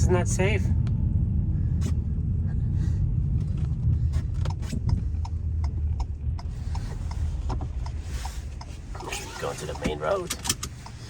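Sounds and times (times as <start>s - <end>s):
car engine and tyres on snow: 0.0s - 11.0s
light regular clicks: 4.3s - 11.0s.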